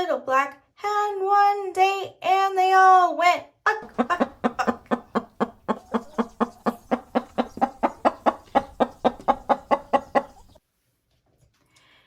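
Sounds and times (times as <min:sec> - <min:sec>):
hen clucking: 0:03.8 - 0:10.6.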